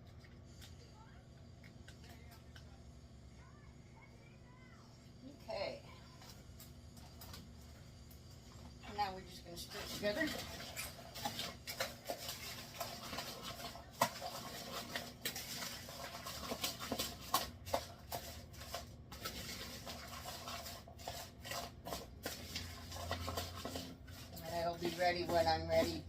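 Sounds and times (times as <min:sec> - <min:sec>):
salad being stirred: 0:06.3 - 0:26.0.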